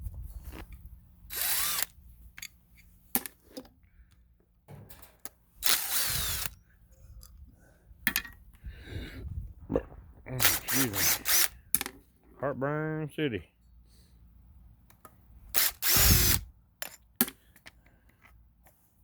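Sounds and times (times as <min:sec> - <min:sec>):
power drill running: 0:01.3 - 0:01.9, 0:05.6 - 0:06.6, 0:10.4 - 0:11.6, 0:15.6 - 0:16.4.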